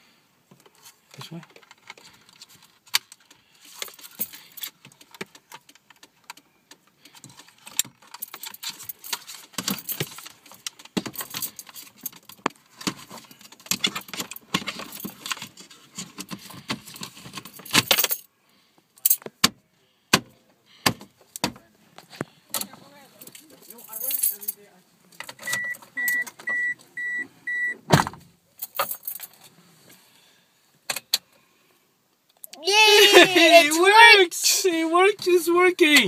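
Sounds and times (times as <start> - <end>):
plastic parts clicking and rattling: 0.5 - 18.2.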